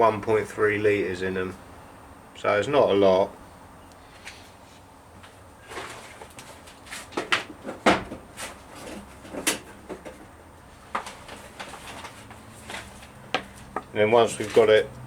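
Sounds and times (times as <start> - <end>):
objects knocking and clattering: 5.7 - 13.9.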